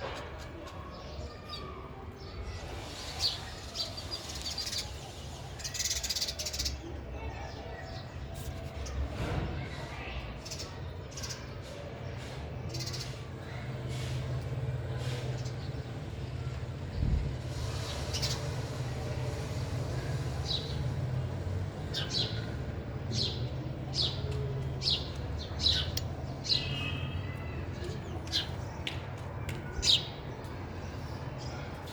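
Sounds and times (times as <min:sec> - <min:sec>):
sparrows chirping: 0:00.0 - 0:31.9.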